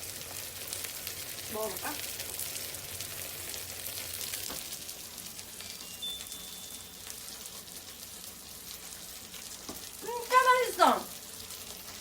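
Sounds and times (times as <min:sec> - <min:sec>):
cheese sizzling in a pan: 0:00.0 - 0:12.0.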